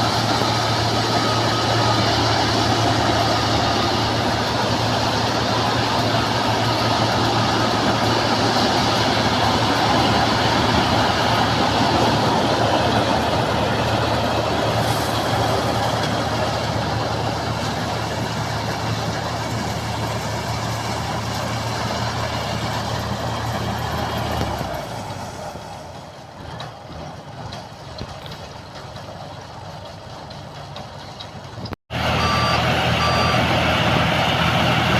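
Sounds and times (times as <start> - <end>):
broad machine noise: 0.0 - 25.1
combine harvester engine hum: 0.0 - 34.9.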